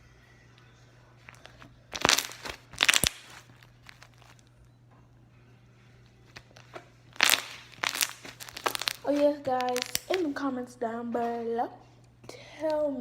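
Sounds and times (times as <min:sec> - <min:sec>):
crackling squelches: 0:01.1 - 0:04.7, 0:06.1 - 0:10.4
slime squishing: 0:01.3 - 0:04.4, 0:06.4 - 0:10.3.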